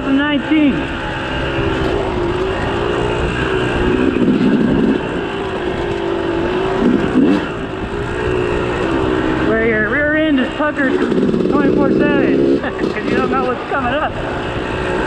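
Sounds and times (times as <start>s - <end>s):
dirt bike engine running: 0.0s - 15.0s
wind noise on microphone: 1.0s - 10.2s.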